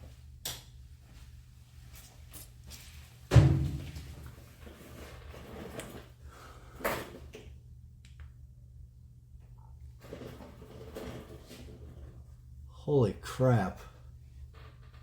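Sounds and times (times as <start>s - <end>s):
deep thump: 3.3s - 4.3s.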